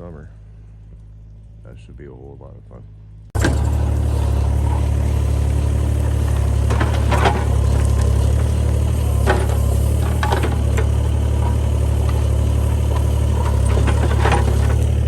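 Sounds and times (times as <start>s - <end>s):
excavator engine under load: 3.4s - 15.0s.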